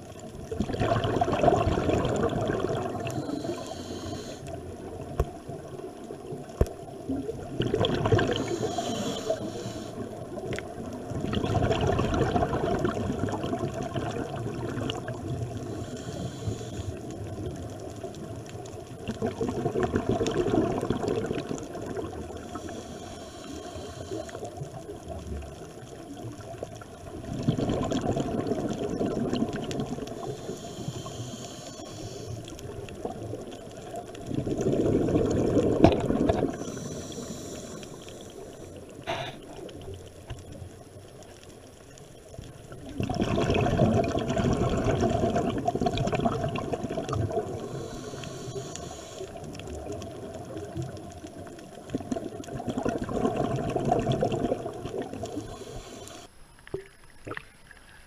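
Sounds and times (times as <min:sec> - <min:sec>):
diver exhaling bubbles underwater: 0:00.5 - 0:05.5, 0:06.4 - 0:16.7, 0:19.0 - 0:22.8, 0:26.1 - 0:30.8, 0:32.6 - 0:37.6, 0:42.7 - 0:48.7, 0:49.4 - 0:56.0
breathing through a regulator: 0:02.6 - 0:04.8, 0:08.2 - 0:10.6, 0:15.5 - 0:17.3, 0:22.0 - 0:24.9, 0:30.0 - 0:32.8, 0:36.3 - 0:39.7, 0:47.3 - 0:50.0, 0:54.6 - 0:56.4.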